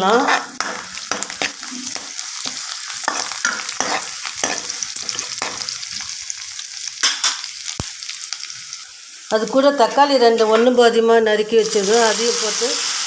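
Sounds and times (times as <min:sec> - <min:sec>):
spatula scraping a pan: 0:00.0 - 0:05.7
vegetables sizzling in hot oil: 0:00.0 - 0:13.0.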